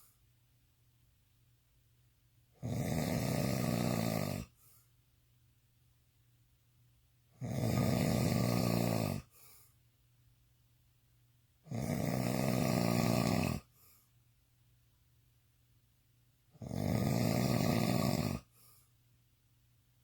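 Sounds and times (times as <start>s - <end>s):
man snoring loudly: 2.6s - 4.5s, 7.4s - 9.3s, 11.7s - 13.7s, 16.6s - 18.5s.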